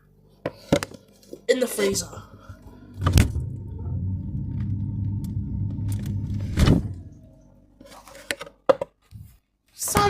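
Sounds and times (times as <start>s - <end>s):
freezer humming: 2.2s - 7.8s.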